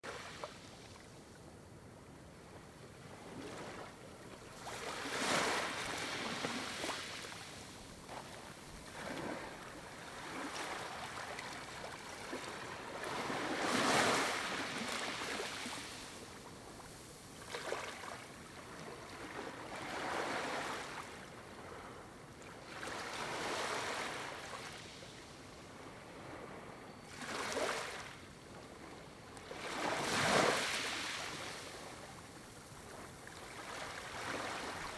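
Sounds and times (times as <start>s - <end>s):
small waves lapping on shore: 2.4s - 25.2s, 25.8s - 34.9s.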